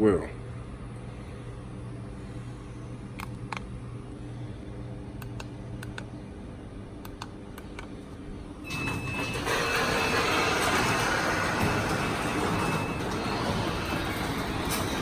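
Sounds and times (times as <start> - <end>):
steady low hum: 0.0 - 15.0
garage door opener running: 8.5 - 15.0.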